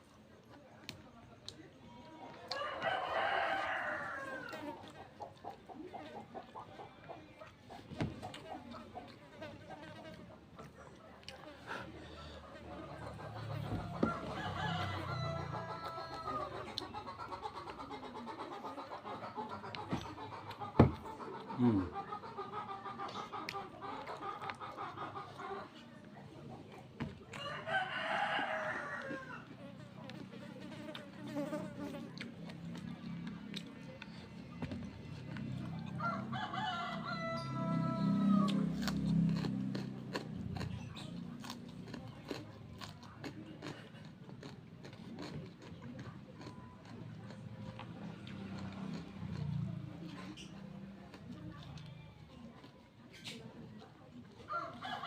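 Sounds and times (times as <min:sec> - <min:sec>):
chewing crunchy food: 0:02.3 - 0:12.7, 0:23.0 - 0:55.0
person chewing food: 0:38.4 - 0:49.8.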